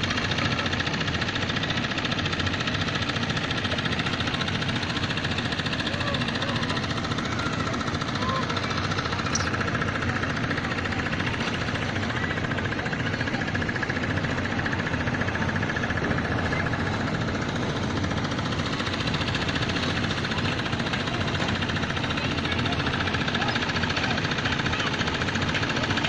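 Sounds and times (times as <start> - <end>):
engine running steadily: 0.0 - 26.0.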